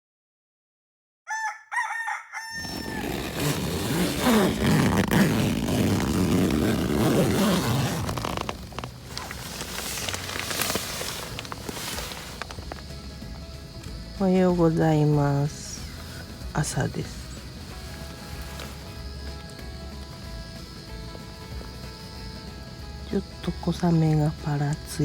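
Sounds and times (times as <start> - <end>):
rooster crowing: 1.3 - 3.5
loud rough rushing noise: 2.6 - 14.1.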